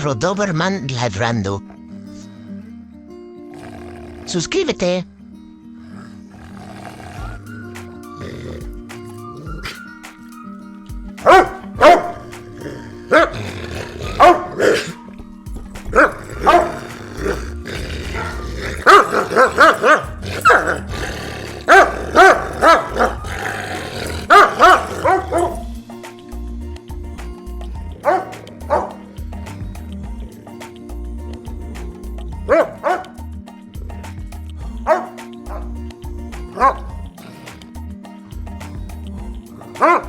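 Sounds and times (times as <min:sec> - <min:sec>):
background music: 0:00.0 - 0:40.0
dog barking loudly: 0:11.2 - 0:15.0, 0:15.9 - 0:25.7, 0:28.0 - 0:29.0, 0:32.4 - 0:33.2, 0:34.9 - 0:35.7, 0:36.6 - 0:36.9, 0:39.8 - 0:40.0
light percussive ticks: 0:32.9 - 0:36.5.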